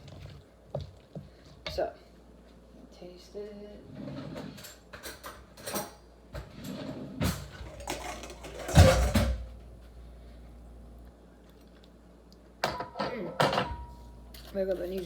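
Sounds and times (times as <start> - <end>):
low background hum: 0.0 - 15.0
utensils and dishes clinking: 4.6 - 6.0, 7.6 - 9.4.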